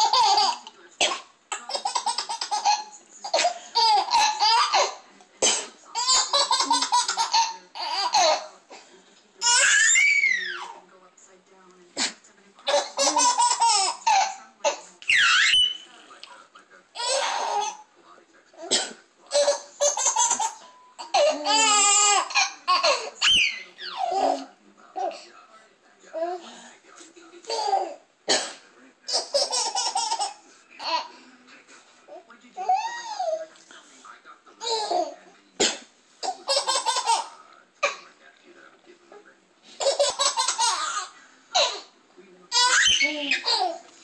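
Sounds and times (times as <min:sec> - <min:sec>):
babies laughing hysterically: 0:00.0 - 0:00.7, 0:01.5 - 0:05.0, 0:05.9 - 0:08.6, 0:09.4 - 0:10.8, 0:12.7 - 0:15.8, 0:17.0 - 0:17.8, 0:19.3 - 0:24.4, 0:29.1 - 0:31.1, 0:36.2 - 0:37.4, 0:39.8 - 0:41.8, 0:42.5 - 0:43.8.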